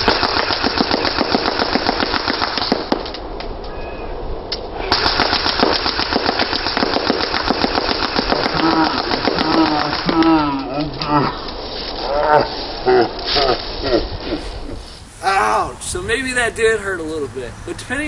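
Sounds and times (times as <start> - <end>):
airsoft gun firing full-auto: 0.0 - 3.1, 4.9 - 10.2
pellets cracking against target: 0.0 - 3.5, 4.5 - 12.2.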